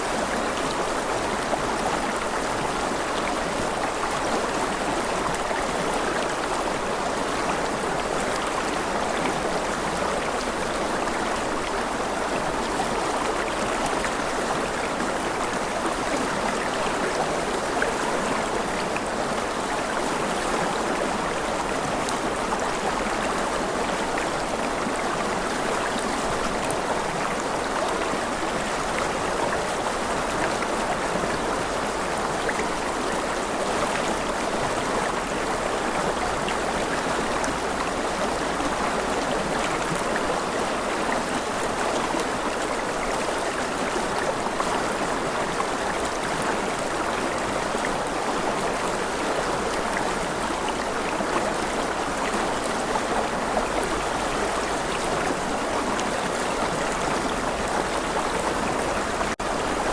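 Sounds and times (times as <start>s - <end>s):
flowing water rushing: 0.0s - 59.9s.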